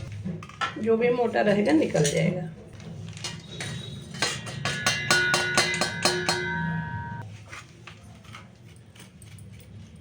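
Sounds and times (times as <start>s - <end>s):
metal sieve tapping: 3.6s - 7.2s.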